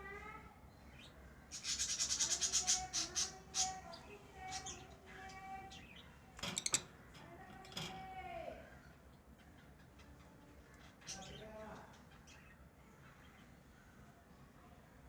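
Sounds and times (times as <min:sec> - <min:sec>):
lovebirds chirping: 0:00.7 - 0:06.9.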